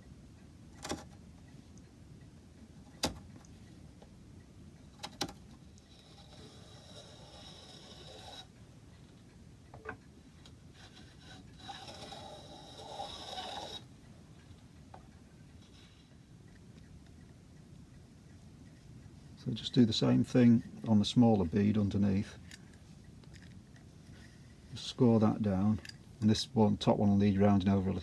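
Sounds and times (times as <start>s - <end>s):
plane scraping along wood: 6.0s - 8.5s, 10.8s - 13.8s.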